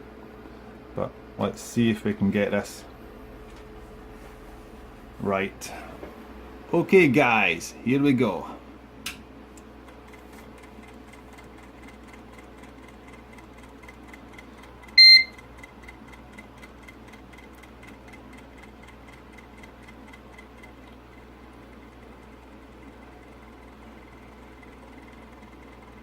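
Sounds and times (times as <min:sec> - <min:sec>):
short high beep: 0:15.0 - 0:15.4.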